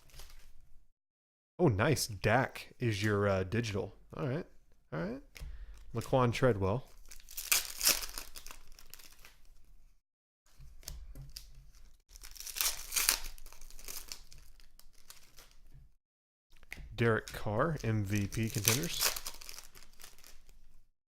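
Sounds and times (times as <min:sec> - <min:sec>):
foil wrapper crinkling and tearing: 0:00.0 - 0:00.6, 0:06.9 - 0:09.7, 0:10.8 - 0:15.8, 0:16.6 - 0:20.9
cards being handled: 0:16.6 - 0:20.8.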